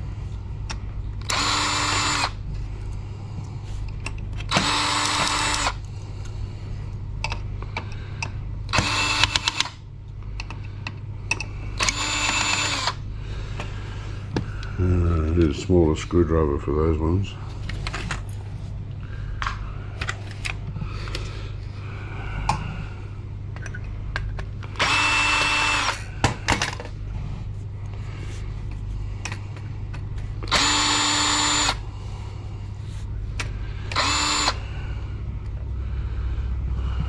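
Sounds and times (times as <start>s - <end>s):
cordless drill spinning: 1.2s - 2.4s, 4.5s - 5.9s, 8.7s - 9.8s, 11.8s - 13.0s, 24.8s - 26.1s, 30.4s - 31.8s, 33.9s - 34.6s.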